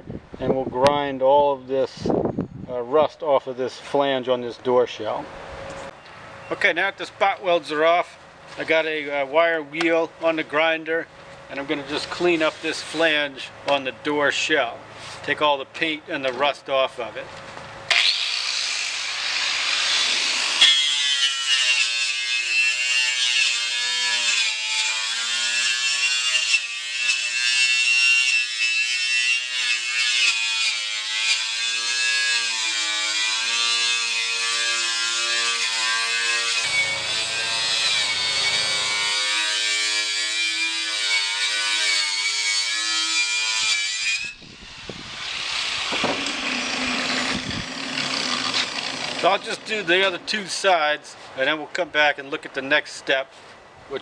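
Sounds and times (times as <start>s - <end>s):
wire wheel grinder scouring metal: 17.9s - 50.7s.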